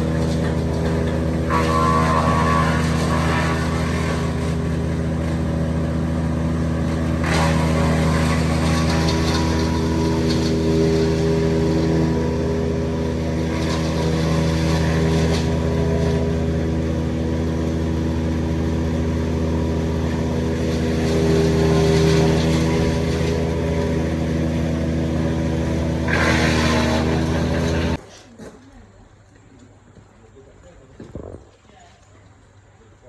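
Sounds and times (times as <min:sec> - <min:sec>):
engine running steadily: 0:00.0 - 0:28.0.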